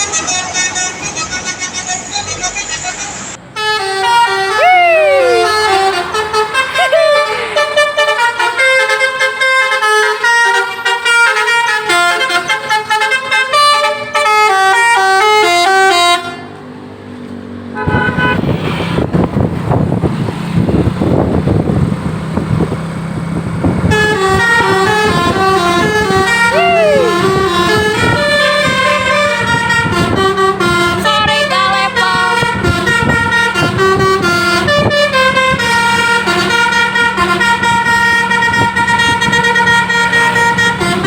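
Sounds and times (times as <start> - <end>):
passing vehicle noise: 0.0 - 41.0
multi-tone bus air horns melody: 3.4 - 16.8, 17.8 - 19.4, 23.6 - 41.0.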